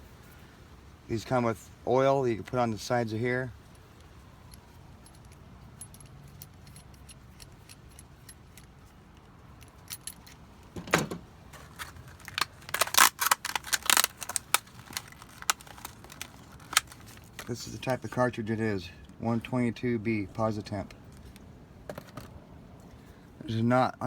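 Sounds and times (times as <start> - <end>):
small hard parts clicking and rattling: 3.6 - 18.1.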